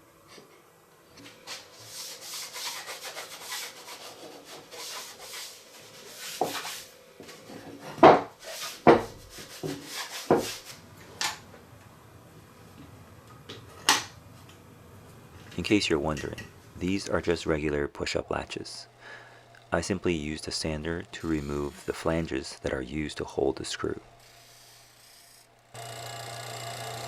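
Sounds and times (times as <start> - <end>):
rubbing on wooden rod: 1.9 - 6.8, 8.4 - 10.8.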